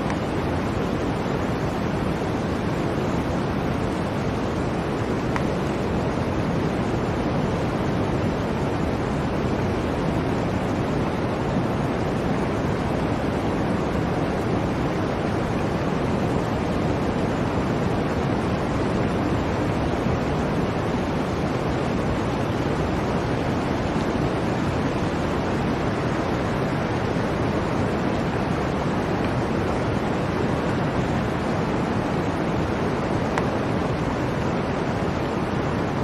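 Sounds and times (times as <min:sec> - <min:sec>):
blizzard wind blowing: 0:00.0 - 0:36.0.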